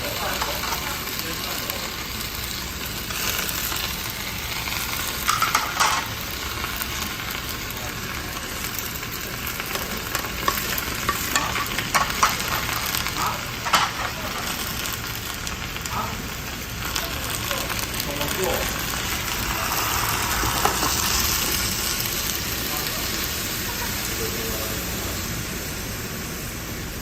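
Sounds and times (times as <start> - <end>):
food sizzling in stir-fry: 0.0 - 27.0
utensil scraping and clinking: 5.2 - 6.2, 10.1 - 12.8.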